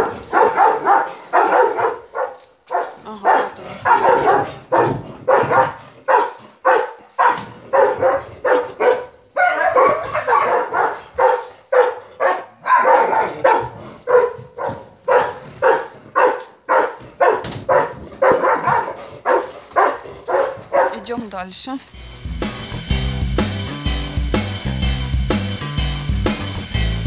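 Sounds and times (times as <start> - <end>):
dog barking: 0.0 - 21.0.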